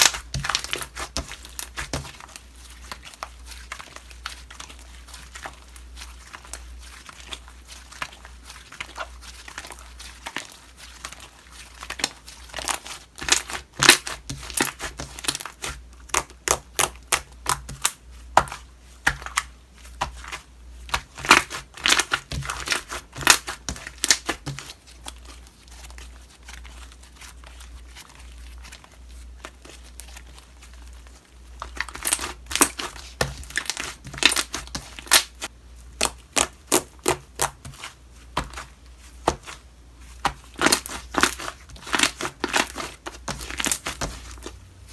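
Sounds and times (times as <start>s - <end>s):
slime crackling and popping: 0.0s - 24.7s, 31.6s - 37.8s, 40.2s - 44.6s.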